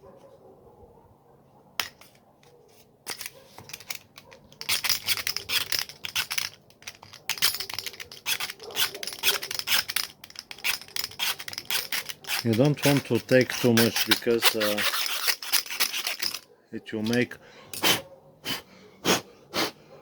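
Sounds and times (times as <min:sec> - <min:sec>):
knife blade scraping plastic: 0:01.8 - 0:16.4.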